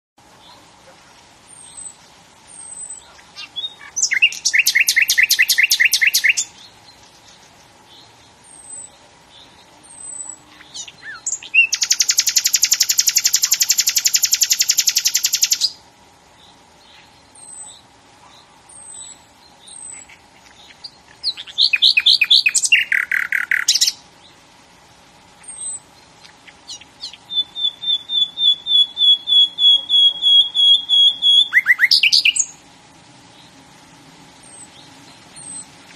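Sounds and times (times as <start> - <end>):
songbird singing: 0.2 - 35.9
high bird chirps: 1.5 - 7.3, 8.0 - 15.8, 18.7 - 24.0, 25.4 - 32.6.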